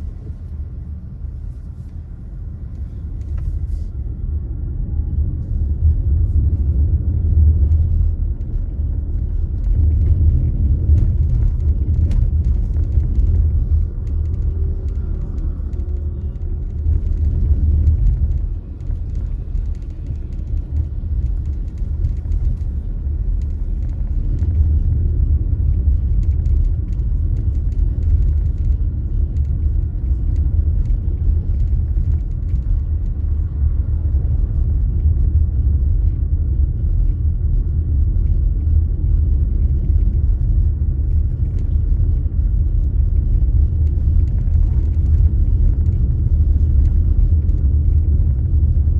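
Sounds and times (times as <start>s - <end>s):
car engine and road noise: 0.0s - 48.9s.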